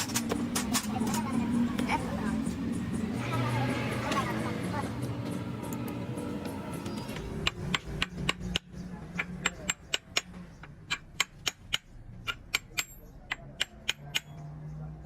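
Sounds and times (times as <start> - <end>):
hammer tapping on metal: 7.4 - 14.4.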